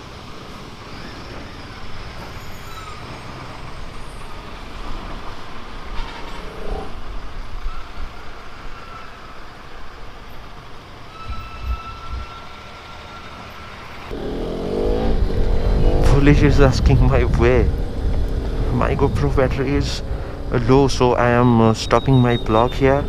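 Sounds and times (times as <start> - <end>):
engines rumbling: 0.0 - 23.0
road and wind noise: 0.0 - 23.0
trucks and buses passing: 0.0 - 23.0.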